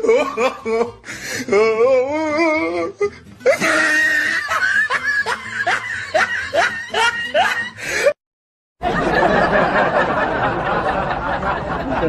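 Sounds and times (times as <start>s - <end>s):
comedy laughter sound effect: 3.4s - 7.9s.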